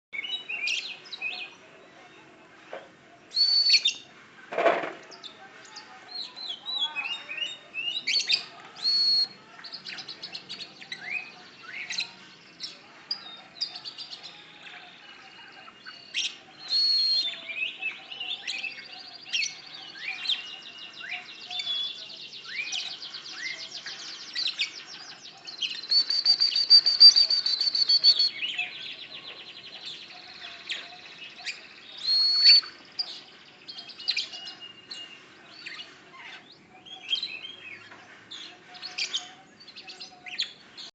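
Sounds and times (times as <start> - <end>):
bird singing whistles and trills: 3.3 - 4.0, 6.2 - 12.2, 14.1 - 35.9, 36.6 - 37.8.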